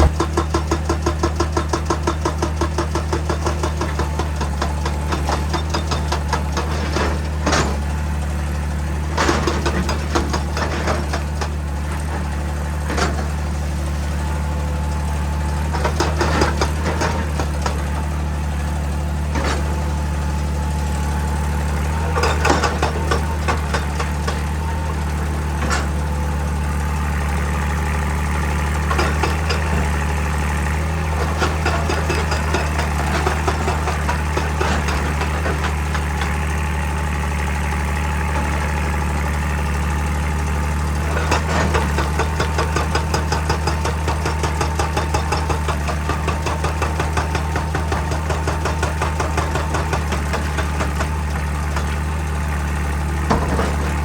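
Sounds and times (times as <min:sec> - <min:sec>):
hydraulic breaker striking rock: 0:00.0 - 0:08.0, 0:15.6 - 0:18.3, 0:21.9 - 0:26.2, 0:28.6 - 0:36.6, 0:40.9 - 0:52.2, 0:53.0 - 0:54.0
excavator diesel engine running: 0:00.0 - 0:54.0.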